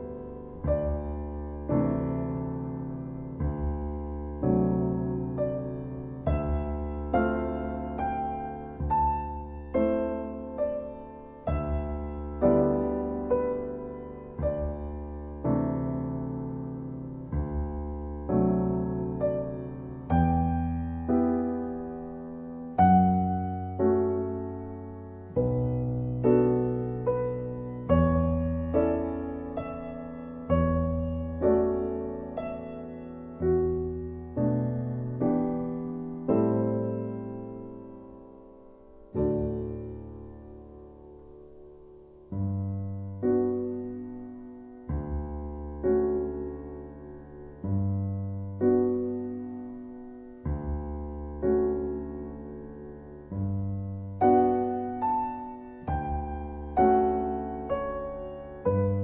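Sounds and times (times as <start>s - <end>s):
gentle piano chords: 0.0s - 59.0s.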